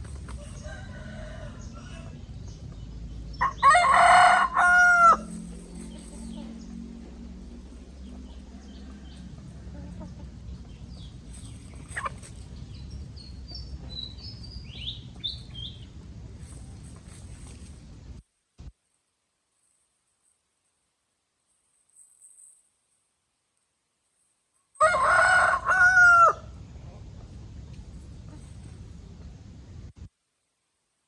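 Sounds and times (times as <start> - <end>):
rooster crowing: 0.4 - 2.3, 3.4 - 5.5, 24.8 - 26.6.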